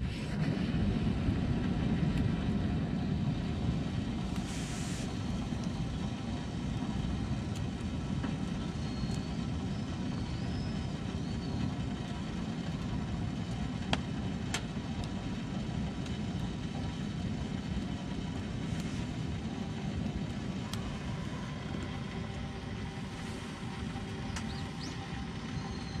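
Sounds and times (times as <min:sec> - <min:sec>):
wood fire rushing: 0:00.0 - 0:26.0
fire crackling pops: 0:00.1 - 0:26.0.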